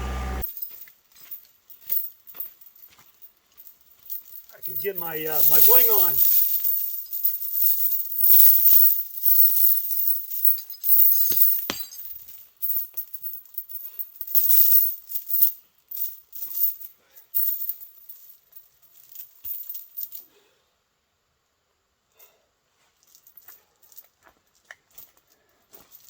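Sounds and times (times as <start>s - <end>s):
steel chain rattling: 0.4s - 20.2s
chain links clanking: 0.4s - 20.3s, 23.0s - 26.0s.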